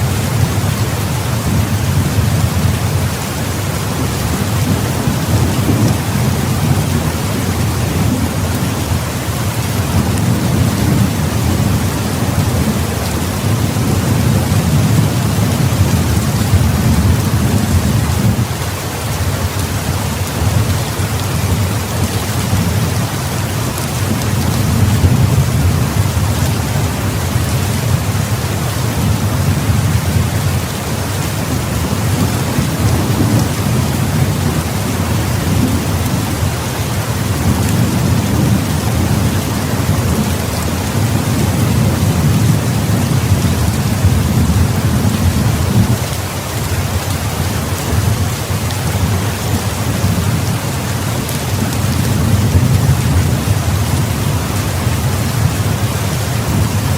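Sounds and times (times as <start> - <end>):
heavy rain falling: 0.0 - 56.9
rolling thunder: 4.0 - 18.6, 23.7 - 46.1.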